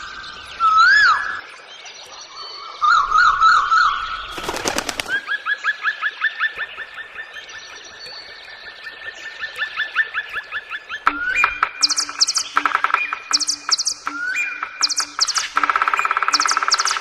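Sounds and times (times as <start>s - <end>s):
bird whistles and trills: 9.3s - 17.0s
rapid clicks: 14.8s - 17.0s.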